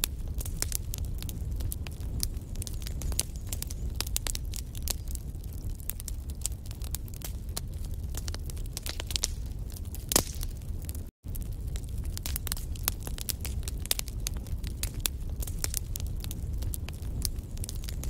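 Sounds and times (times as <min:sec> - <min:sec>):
logs crackling in fire: 0:00.0 - 0:18.0
low rumble of flame: 0:00.0 - 0:18.0
loud fire pop: 0:10.1 - 0:10.6.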